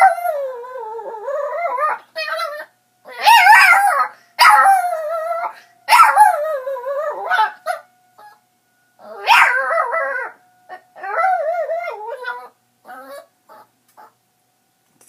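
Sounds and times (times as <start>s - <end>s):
dog howling: 0.0s - 8.4s, 9.0s - 14.1s
faint tornado siren tone: 0.0s - 14.6s.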